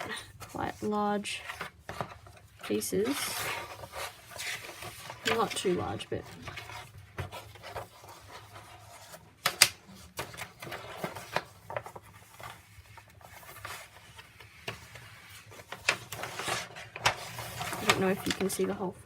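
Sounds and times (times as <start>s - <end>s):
stiff paper rustling and crinkling: 0.0s - 19.0s.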